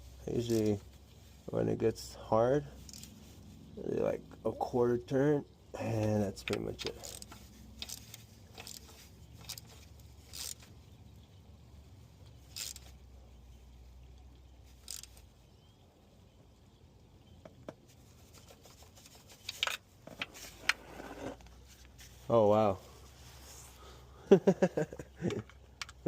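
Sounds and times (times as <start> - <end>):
hand ratchet clicking: 6.5 - 10.6, 12.5 - 12.9, 14.8 - 15.2.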